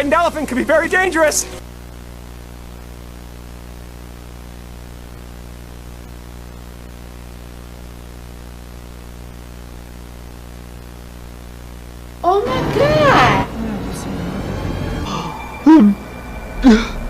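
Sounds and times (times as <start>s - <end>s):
static hiss: 0.0s - 13.4s
low electrical hum: 0.0s - 17.0s.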